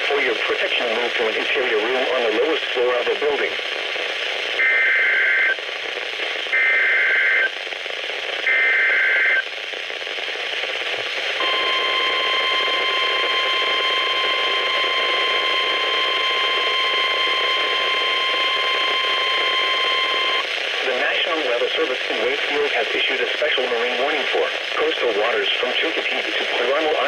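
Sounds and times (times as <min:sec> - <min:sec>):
radio static hiss: 0:00.0 - 0:27.0
steady alarm tone: 0:11.4 - 0:20.4.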